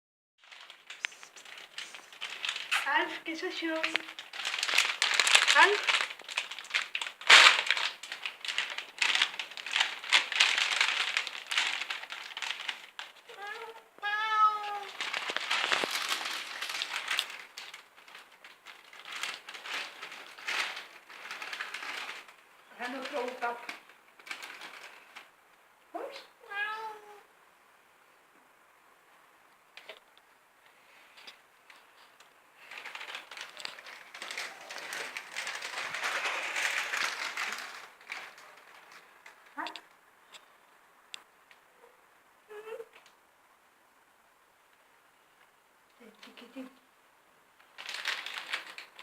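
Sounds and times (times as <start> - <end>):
cat crunching lettuce: 3.8 - 22.3
cat meowing: 13.3 - 15.0, 26.4 - 27.3.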